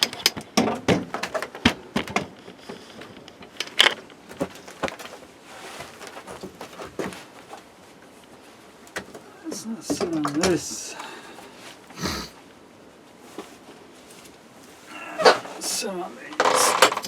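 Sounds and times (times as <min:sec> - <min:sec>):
hard objects knocking and clattering: 0:00.0 - 0:02.4, 0:16.4 - 0:17.0.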